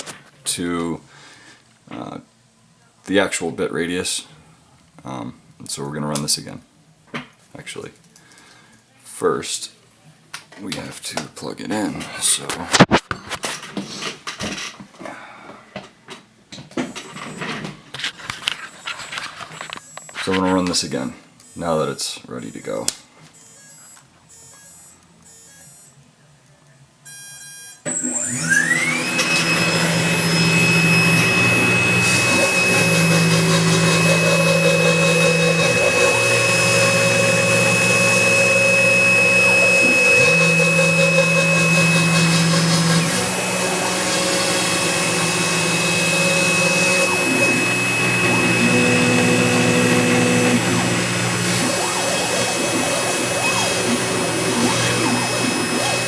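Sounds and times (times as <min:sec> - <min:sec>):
spindle motor whine: 0:27.8 - 0:56.0
stepper motors humming: 0:27.9 - 0:56.0.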